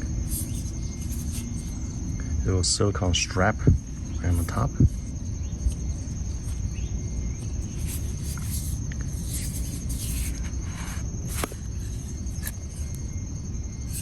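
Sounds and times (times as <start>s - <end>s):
case scraping and rustling: 0.0s - 2.0s, 4.3s - 13.0s
faint high-pitched whine: 0.0s - 14.0s
steady low hum: 0.0s - 14.0s.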